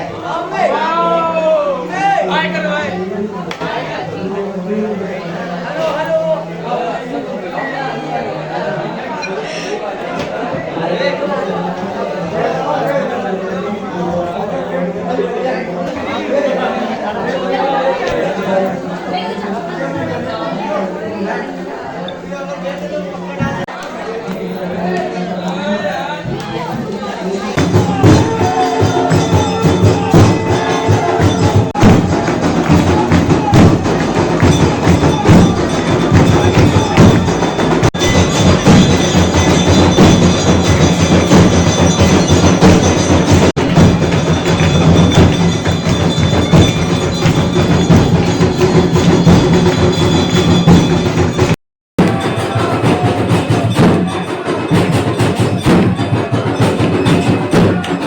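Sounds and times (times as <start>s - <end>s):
fast drum and percussion beats: 26.2s - 58.0s
bells ringing: 27.2s - 58.0s.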